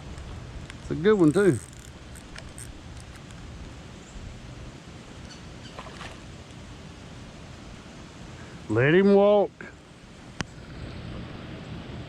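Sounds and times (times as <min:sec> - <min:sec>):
soft rustle: 0:00.1 - 0:03.8.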